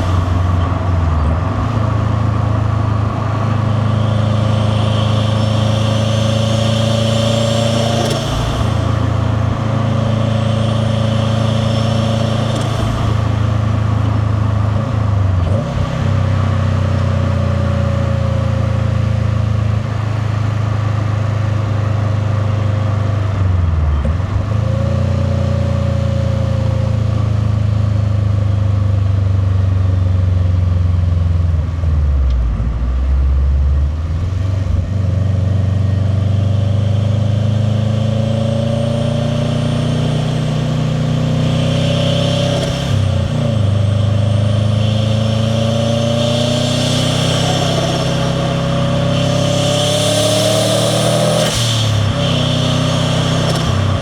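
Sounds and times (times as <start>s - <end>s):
car engine accelerating: 0.0s - 54.0s
exhaust rumble: 0.0s - 54.0s.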